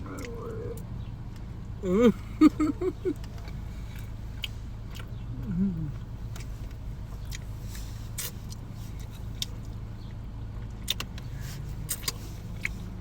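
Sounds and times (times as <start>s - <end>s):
low rumble inside a car: 0.0s - 13.0s
chewing crispy food: 3.0s - 9.9s, 10.6s - 13.0s.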